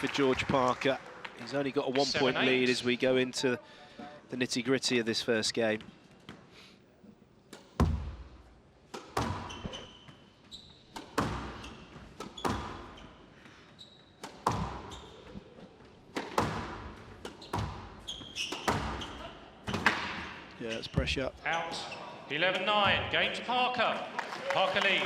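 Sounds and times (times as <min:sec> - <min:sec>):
squash ball hits: 0:07.6 - 0:09.8, 0:10.9 - 0:13.0, 0:14.2 - 0:14.9, 0:16.1 - 0:20.3
shoes squeaking on court floor: 0:08.9 - 0:23.0.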